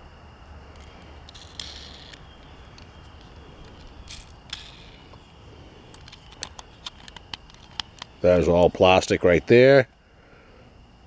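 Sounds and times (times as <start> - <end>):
low steady hum: 0.0 - 11.0
toy car scraping: 0.6 - 8.6
toy car clicks: 0.7 - 8.7.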